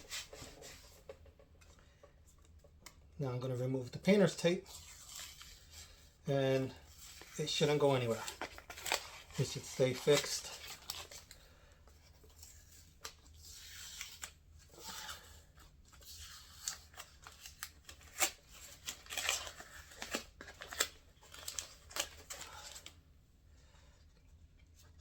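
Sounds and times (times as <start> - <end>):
tape rustling and peeling: 4.0 - 23.0.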